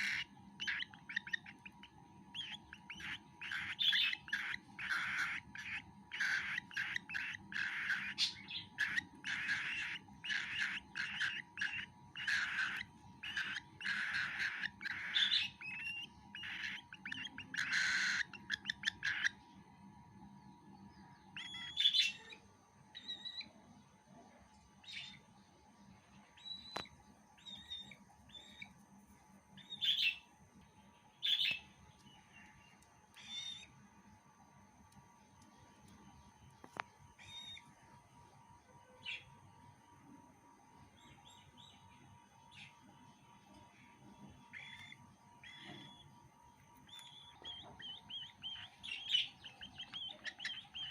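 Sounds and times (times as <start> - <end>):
baby bird begging calls: 0.0 - 19.4, 21.3 - 23.5, 29.6 - 30.3, 31.2 - 31.7, 33.1 - 33.7, 37.2 - 37.6, 44.5 - 46.1, 46.8 - 50.9.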